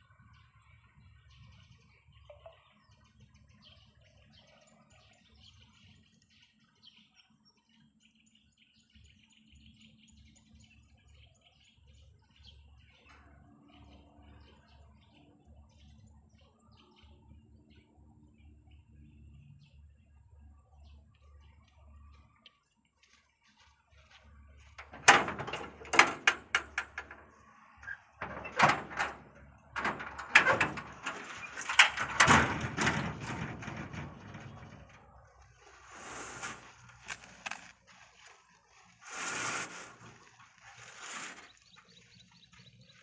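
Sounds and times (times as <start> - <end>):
bird chirps: 1.5 - 10.6
irregular knocks and clatters: 24.8 - 35.8
rustling: 24.8 - 42.7.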